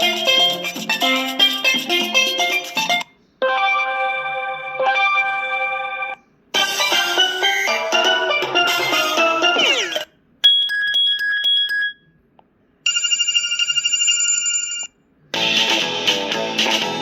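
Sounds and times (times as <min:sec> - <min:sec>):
warbling telephone ring: 0:12.9 - 0:14.9.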